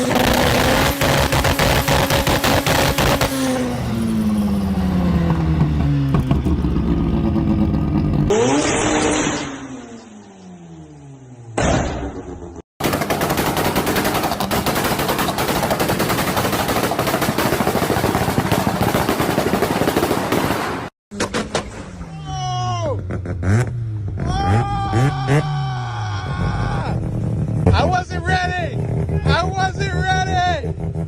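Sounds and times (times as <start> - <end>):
exhaust pops and bangs: 0.0 - 3.6, 5.2 - 8.9, 11.6 - 22.2
rotary engine revving: 0.0 - 12.6, 23.0 - 25.5.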